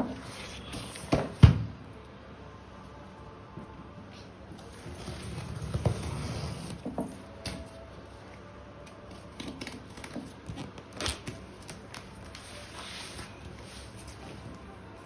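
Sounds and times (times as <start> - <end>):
packaging rustling and scraping: 9.1 - 14.7.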